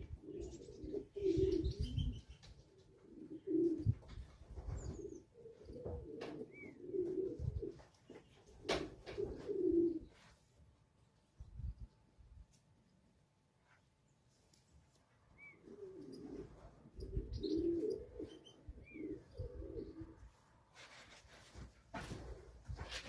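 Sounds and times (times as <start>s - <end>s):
pigeons cooing: 0.0s - 10.2s, 15.4s - 20.4s.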